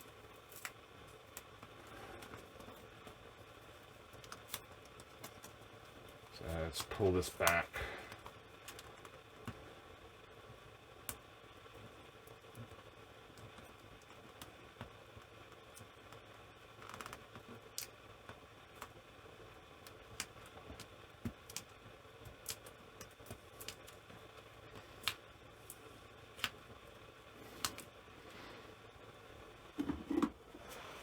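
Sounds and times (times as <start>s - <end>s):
faint steady hiss: 0.0s - 31.0s.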